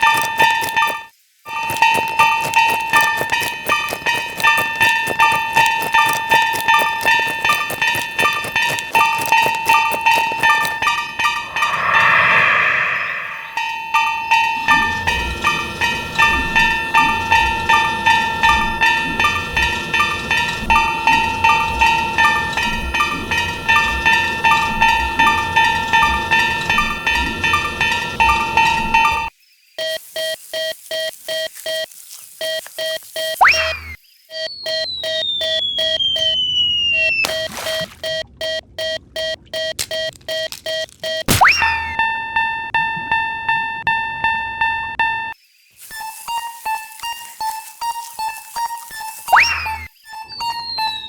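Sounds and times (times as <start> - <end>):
railroad crossing bell ringing: 0.0 - 29.3
whistle-like tone sliding down: 11.0 - 15.6, 33.4 - 37.2.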